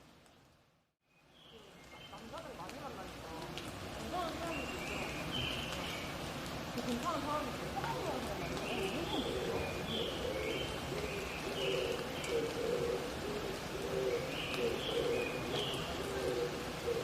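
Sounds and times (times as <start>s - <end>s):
rain hiss: 0.0s - 17.0s
dove cooing: 7.8s - 17.0s.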